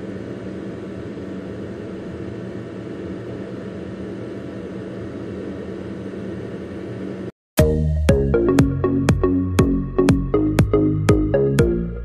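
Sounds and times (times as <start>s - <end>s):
computer fan whirring: 0.0s - 7.3s.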